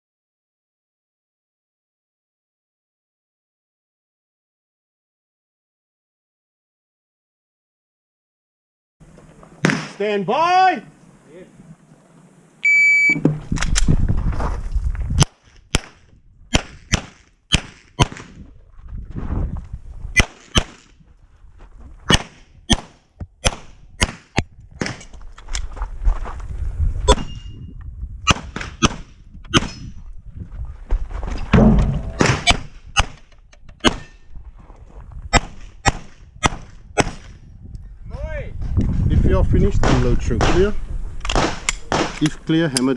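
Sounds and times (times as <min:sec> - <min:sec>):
shot timer beep: 0:12.6 - 0:13.2
handgun shots: 0:31.6 - 0:33.2, 0:35.4 - 0:37.3, 0:41.3 - 0:42.3.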